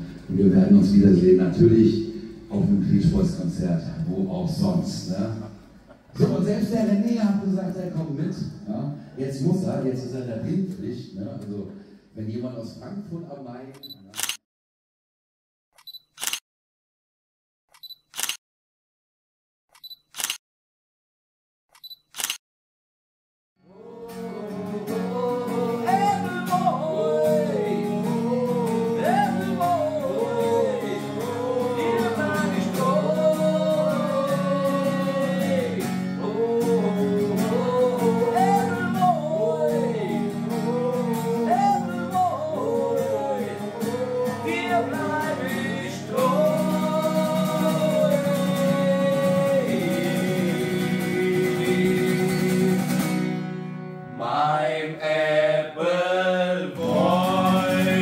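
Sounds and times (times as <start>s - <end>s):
song with guitar and band: 23.8s - 54.2s.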